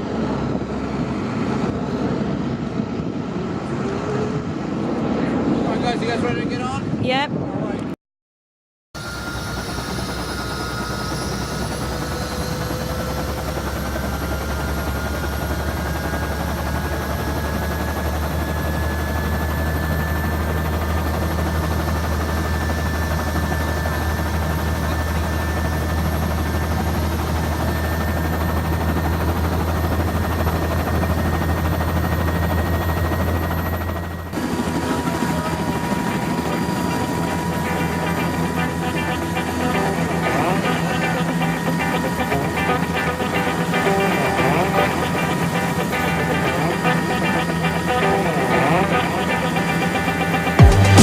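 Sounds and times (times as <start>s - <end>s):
helicopter drone: 0.0s - 7.8s, 9.0s - 51.0s
thin rising whine: 9.0s - 34.7s.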